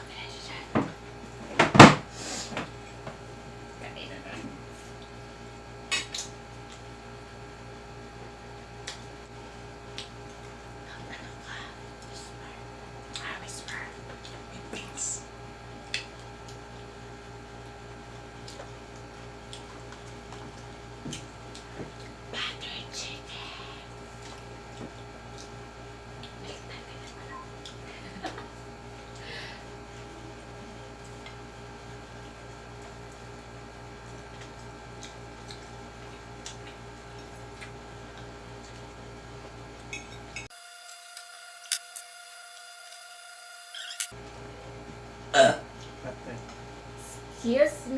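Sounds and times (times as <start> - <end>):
steady electrical hum: 0.0 - 47.9
eating sounds: 17.6 - 22.6, 23.4 - 31.5, 34.0 - 39.0.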